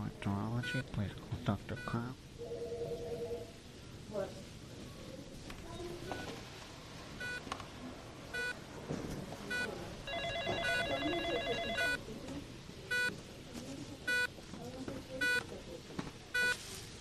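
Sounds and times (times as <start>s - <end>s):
patient monitor beeps: 0.6s - 0.8s, 1.7s - 3.5s, 7.2s - 7.4s, 8.3s - 8.6s, 9.5s - 12.0s, 12.9s - 13.2s, 14.1s - 14.3s, 15.2s - 15.5s, 16.4s - 16.6s
telephone ringing: 9.5s - 12.0s.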